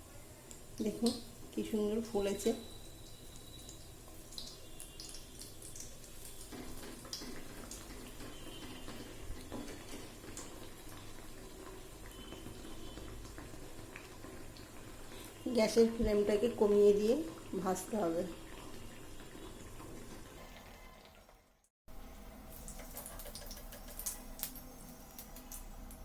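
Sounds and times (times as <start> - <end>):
food sizzling in hot oil: 0.2 - 20.5.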